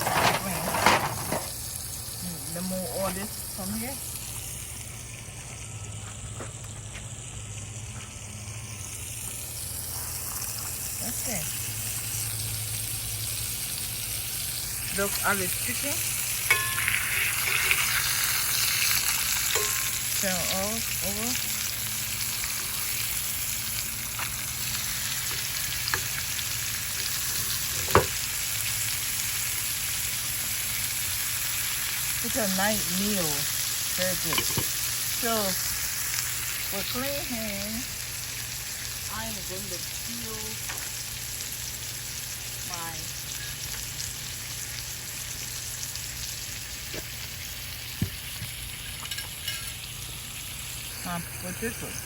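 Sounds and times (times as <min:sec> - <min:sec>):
chicken sizzling in a pan: 0:00.0 - 0:52.0.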